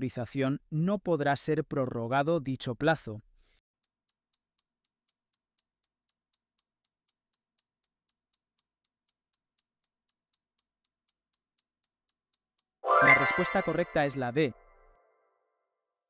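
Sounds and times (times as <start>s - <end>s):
clock ticking: 4.0s - 14.5s.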